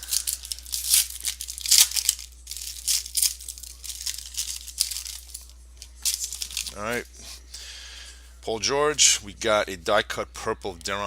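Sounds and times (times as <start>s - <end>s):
card packs being torn open: 0.0s - 7.0s.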